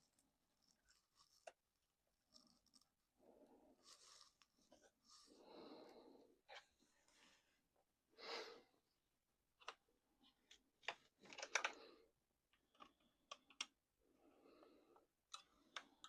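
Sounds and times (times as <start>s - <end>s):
small plastic parts clicking: 10.4s - 11.8s, 12.5s - 13.7s.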